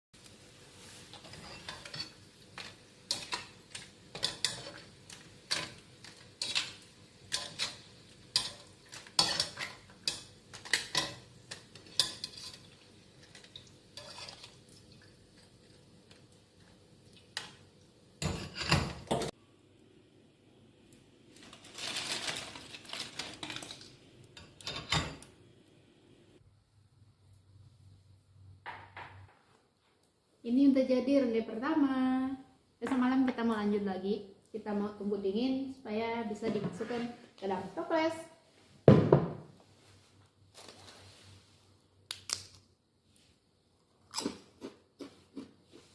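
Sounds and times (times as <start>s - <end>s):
metal utensil clinking on pan: 1.1s - 12.6s.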